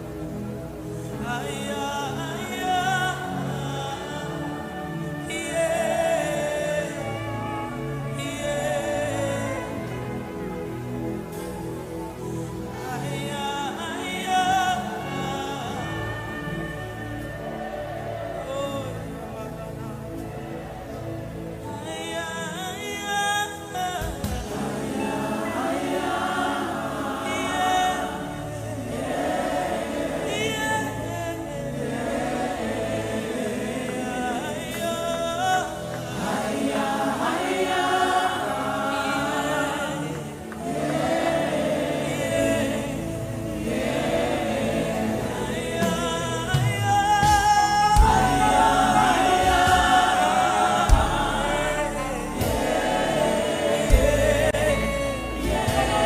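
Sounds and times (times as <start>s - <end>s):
choir singing: 0.0s - 56.0s
instrumental backing: 31.5s - 56.0s.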